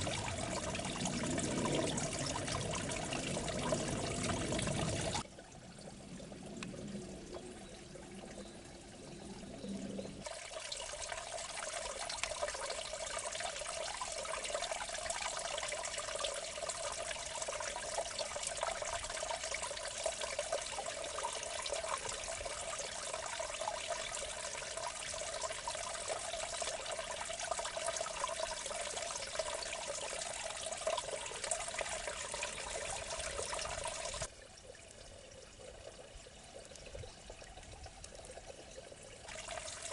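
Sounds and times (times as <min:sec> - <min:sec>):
water trickling and gurgling: 0:00.0 - 0:39.9.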